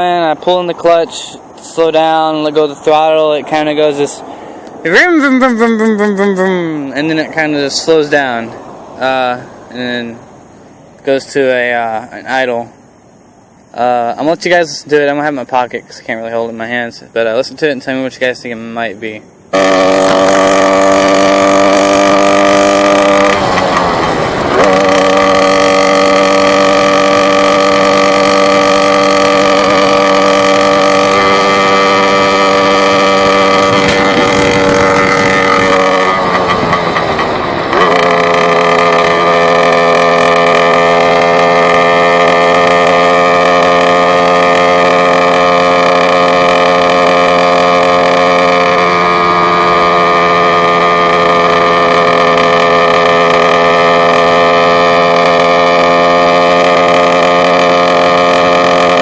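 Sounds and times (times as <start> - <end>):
motorcycle engine running: 19.4 - 59.0.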